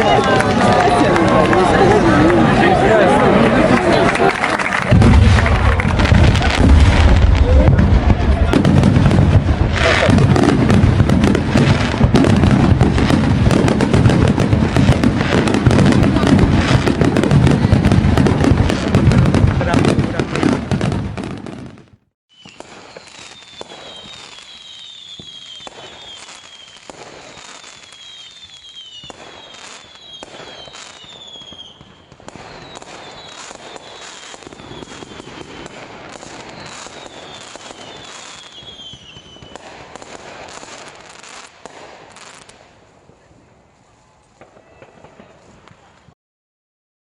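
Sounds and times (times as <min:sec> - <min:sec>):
fireworks crackling and popping: 0:00.0 - 0:46.2
falling firework whistles: 0:22.3 - 0:42.6, 0:43.9 - 0:46.2.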